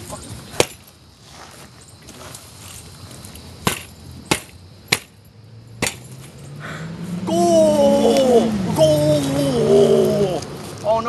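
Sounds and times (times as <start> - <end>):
background hiss: 0.0 - 11.0
sharp knocks: 3.6 - 5.2, 5.8 - 6.2.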